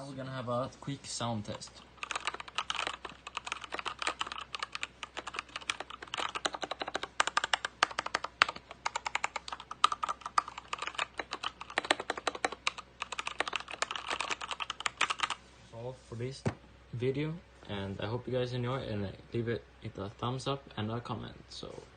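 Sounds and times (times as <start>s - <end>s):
mechanical keyboard typing: 1.5s - 15.4s.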